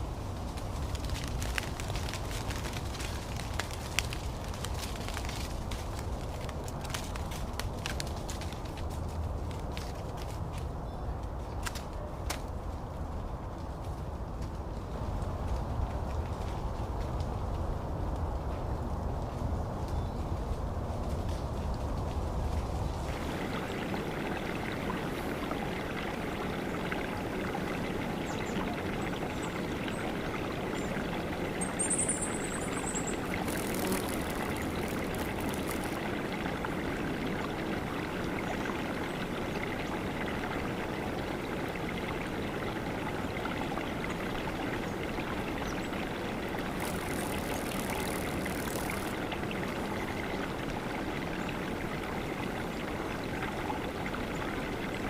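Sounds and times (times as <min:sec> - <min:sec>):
running water rushing: 0:00.0 - 0:10.4, 0:22.8 - 0:55.0.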